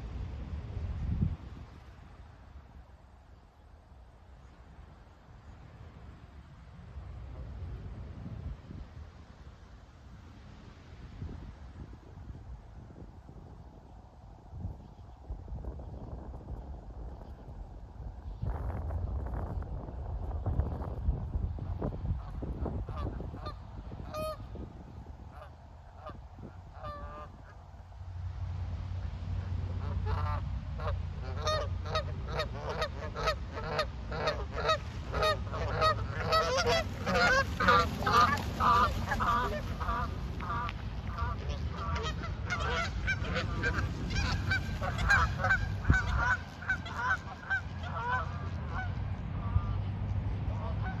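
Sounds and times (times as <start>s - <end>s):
steady low rumble: 11.2s - 51.0s
geese honking: 22.9s - 24.5s, 26.8s - 27.6s, 29.4s - 49.8s.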